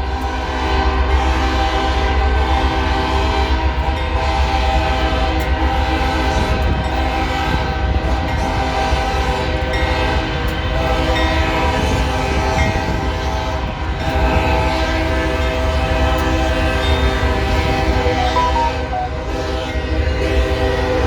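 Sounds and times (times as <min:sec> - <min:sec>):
train air horns blowing: 0:10.8 - 0:19.9.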